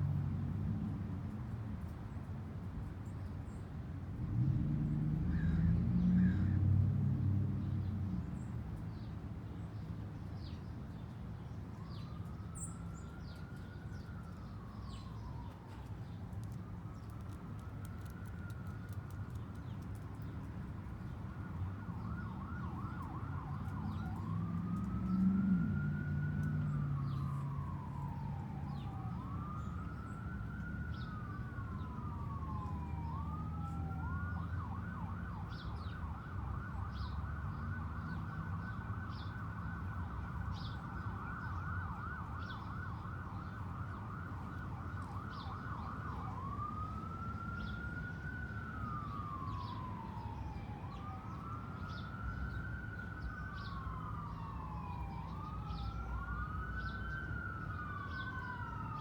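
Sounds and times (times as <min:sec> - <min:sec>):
emergency siren wailing: 0:11.7 - 0:59.0.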